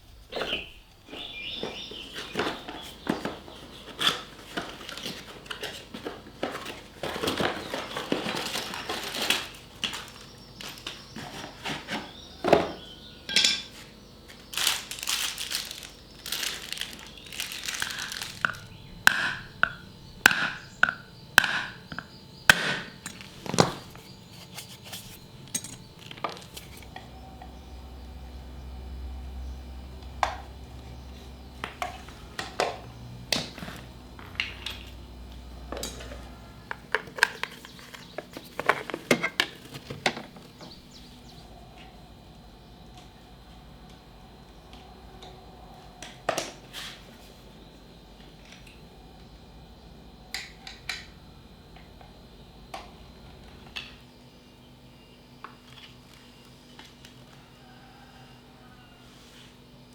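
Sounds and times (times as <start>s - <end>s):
dishes and cutlery clinking: 13.3s - 13.8s.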